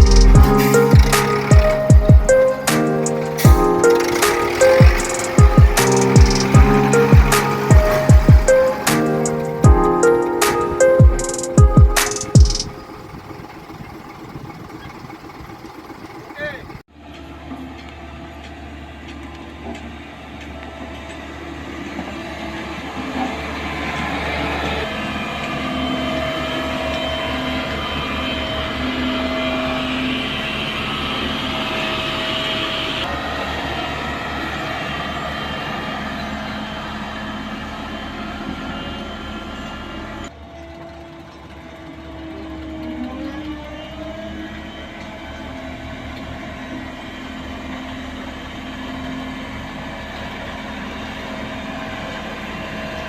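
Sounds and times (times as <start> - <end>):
heavy machinery diesel engine: 0.0 - 10.9, 11.5 - 16.8
machine whine: 0.0 - 16.8.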